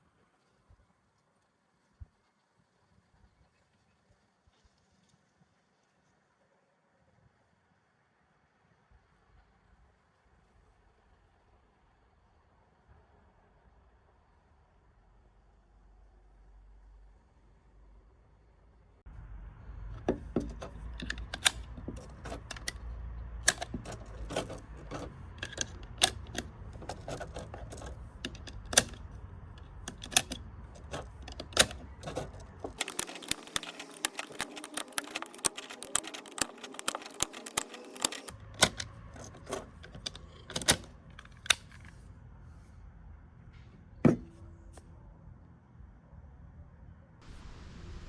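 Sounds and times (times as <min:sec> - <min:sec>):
rapid mechanical clicking and clacking: 0:20.0 - 0:22.8, 0:23.4 - 0:41.9.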